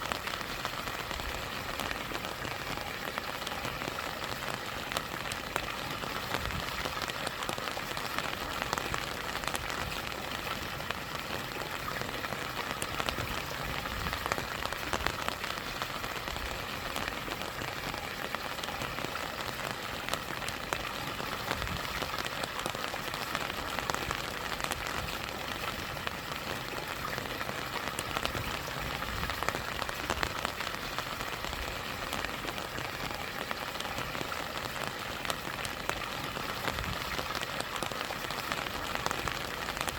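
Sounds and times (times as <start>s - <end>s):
rain falling: 0.0s - 39.9s
small waterfall: 0.0s - 39.9s.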